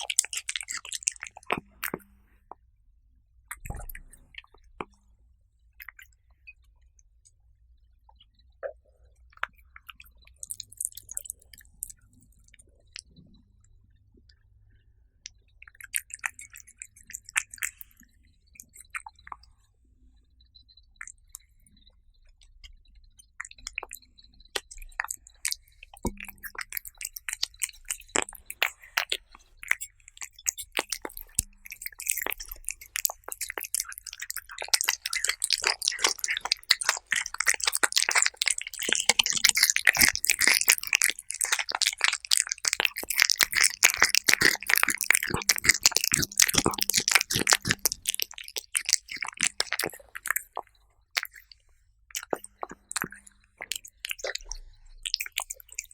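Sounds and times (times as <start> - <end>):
cats crunching food: 0.0 - 2.2, 24.6 - 55.9.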